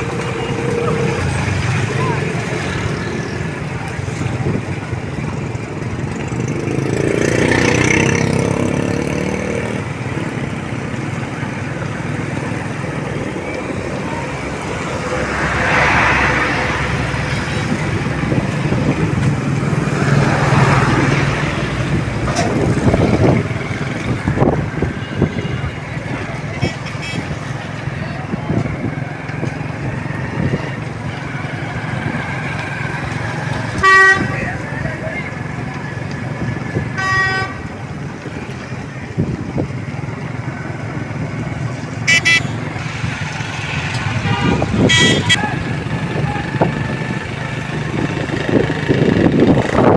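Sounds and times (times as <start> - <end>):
street traffic noise: 0.0 - 49.9
higher-pitched horn toots: 33.8 - 34.4, 42.0 - 42.6, 44.2 - 45.5
vehicle horn: 33.8 - 34.5, 36.9 - 37.7, 42.0 - 42.6, 44.2 - 45.5.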